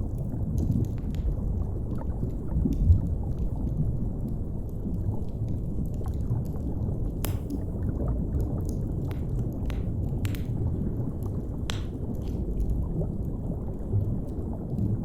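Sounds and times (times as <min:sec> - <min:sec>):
deep underwater rumble: 0:00.0 - 0:15.0
fire crackling: 0:04.3 - 0:13.8.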